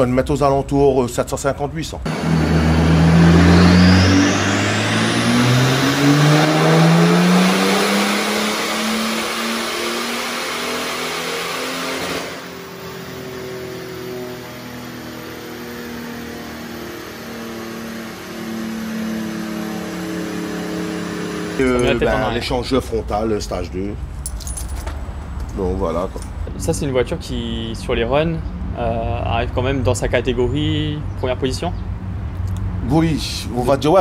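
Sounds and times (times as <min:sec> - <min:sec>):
diesel car accelerating hard: 0:02.1 - 0:22.9.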